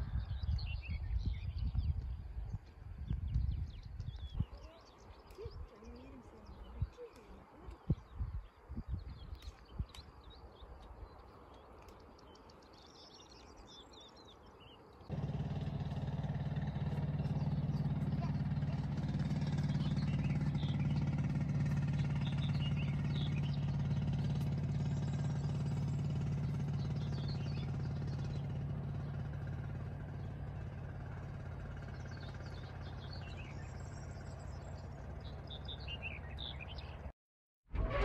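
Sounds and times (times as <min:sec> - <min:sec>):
small birds chirping: 0:00.0 - 0:37.1
engine running: 0:15.0 - 0:37.1, 0:37.7 - 0:38.0.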